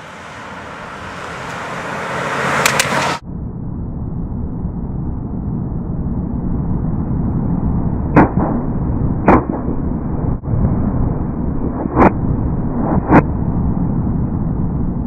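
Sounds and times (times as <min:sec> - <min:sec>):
vehicle rumble at speed: 0:00.0 - 0:15.0
sharp whooshing cracks: 0:01.0 - 0:03.2, 0:08.1 - 0:10.0, 0:11.5 - 0:13.4
wind on microphone: 0:03.8 - 0:15.0.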